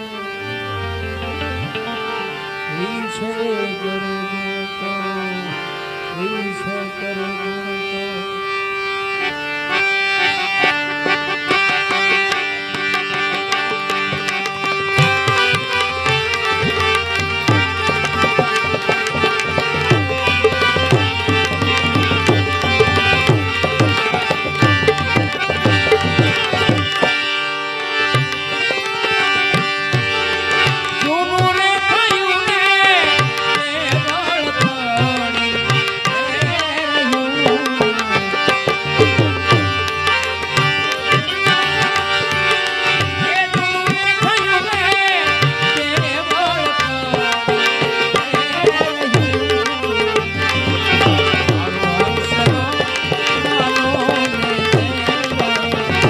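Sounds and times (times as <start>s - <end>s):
held drone notes: 0.0s - 8.4s, 10.0s - 31.4s
pitch-bending melody: 0.0s - 56.0s
tabla rhythm: 0.0s - 56.0s.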